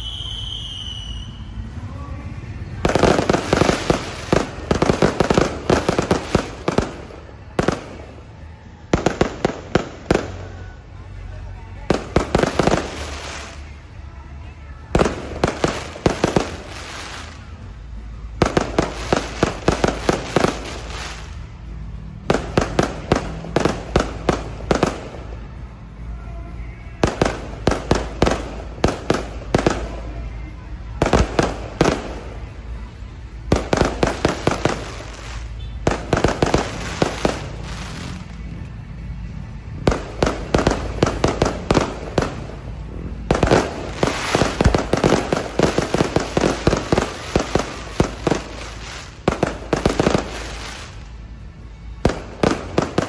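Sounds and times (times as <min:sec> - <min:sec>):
fireworks bangs: 0:00.0 - 0:13.8, 0:14.7 - 0:38.7, 0:39.5 - 0:53.0
faint music: 0:00.0 - 0:53.0.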